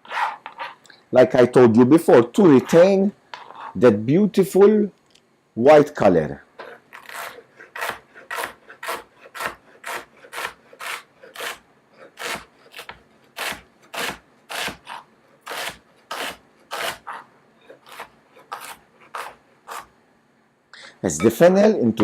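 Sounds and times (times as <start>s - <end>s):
knife slicing fennel: 7.0s - 19.9s.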